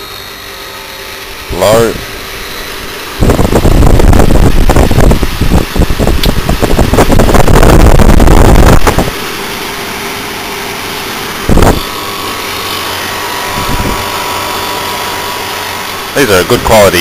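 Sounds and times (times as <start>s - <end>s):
air conditioner humming: 0.0s - 17.0s
air rushing on microphone: 3.1s - 9.6s, 11.4s - 12.0s, 13.4s - 14.2s.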